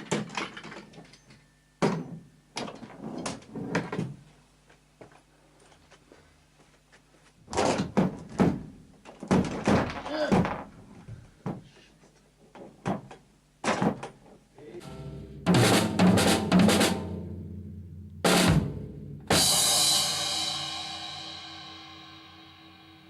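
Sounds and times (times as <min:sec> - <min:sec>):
drum kit being played: 0:14.8 - 0:23.0
loud ringing drum hit: 0:14.8 - 0:23.0.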